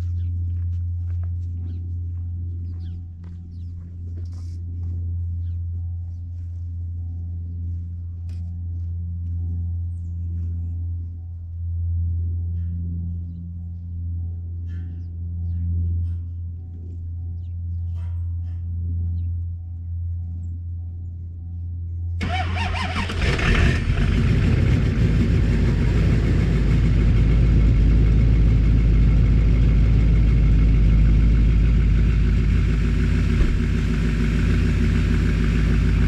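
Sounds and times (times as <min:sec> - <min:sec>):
truck engine cranking and running: 0:22.2 - 0:36.0.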